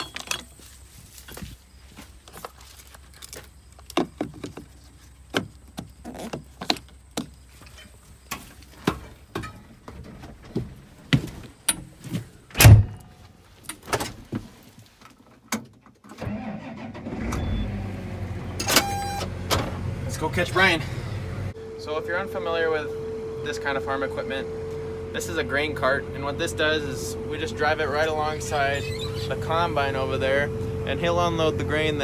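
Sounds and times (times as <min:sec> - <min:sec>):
handling clicks and knocks: 0:02.3 - 0:16.2
heavy thud: 0:12.6 - 0:13.0
engine starting and running: 0:16.1 - 0:32.0.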